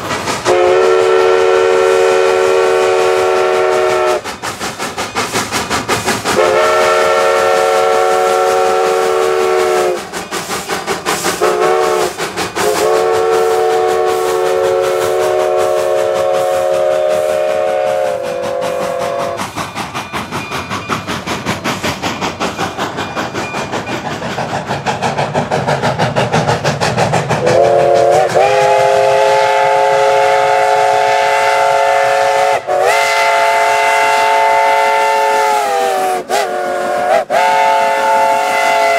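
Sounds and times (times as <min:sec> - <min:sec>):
locomotive exhaust beat: 0:00.0 - 0:38.9
steam whistle chord: 0:00.5 - 0:04.2, 0:06.4 - 0:10.1, 0:11.4 - 0:19.4, 0:27.4 - 0:38.9.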